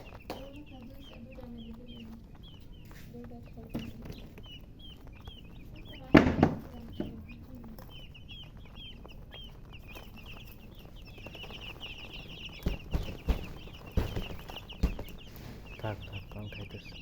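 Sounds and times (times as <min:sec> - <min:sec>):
baby chicks peeping: 0:00.0 - 0:17.0
knocks: 0:06.0 - 0:07.3, 0:12.2 - 0:15.8.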